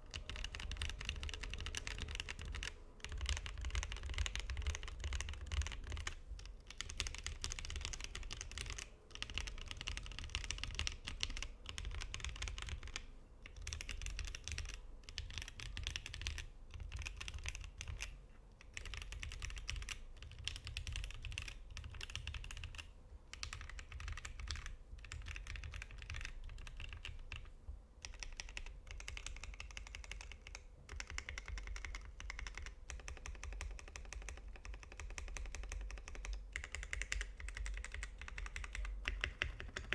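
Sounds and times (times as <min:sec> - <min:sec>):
mechanical keyboard typing: 0:00.0 - 0:39.9.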